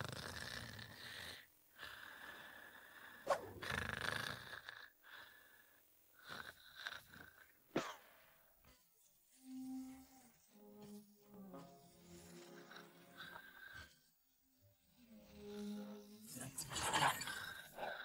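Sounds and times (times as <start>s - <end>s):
cartoon snoring: 0.0s - 5.6s, 6.2s - 7.6s, 12.2s - 14.0s, 14.8s - 18.0s.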